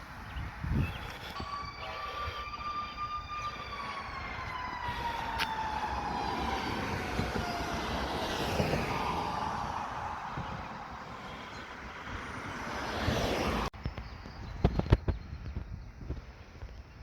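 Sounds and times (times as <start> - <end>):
truck engine rumble: 0.0 - 13.8
fire truck siren winding down: 1.0 - 11.5.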